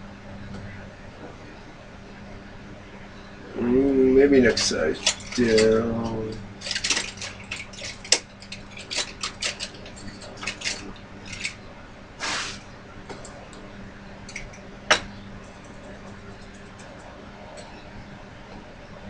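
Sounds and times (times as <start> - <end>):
metal tools clinking in a box: 6.6 - 11.6.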